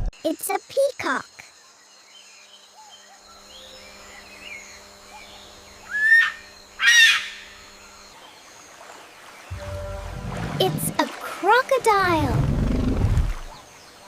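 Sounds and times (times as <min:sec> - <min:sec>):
peacock harsh calls: 0:05.9 - 0:07.6.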